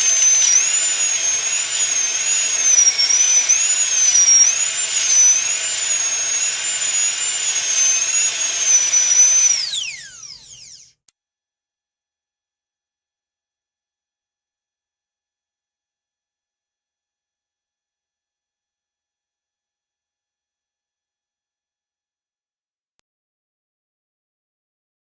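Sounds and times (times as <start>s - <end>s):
high-pitched electronic tone: 0.0s - 10.3s.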